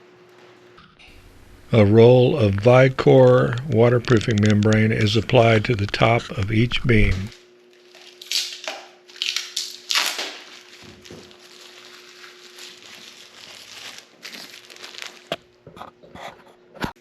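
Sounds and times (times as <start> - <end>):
membrane crinkling and rustling: 7.0 - 16.5.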